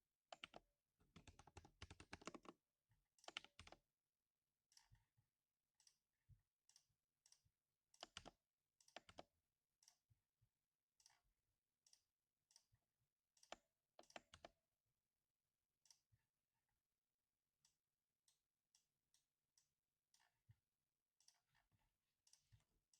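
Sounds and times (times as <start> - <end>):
mechanical keyboard typing: 1.2 - 2.5, 3.2 - 3.8, 8.0 - 9.2, 13.4 - 14.5.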